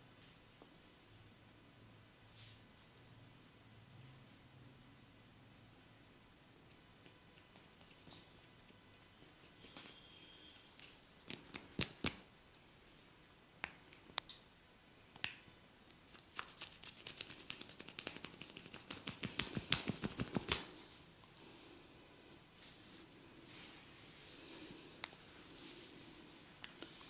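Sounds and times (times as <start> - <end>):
hands snapping clicks on head: 13.6 - 14.4.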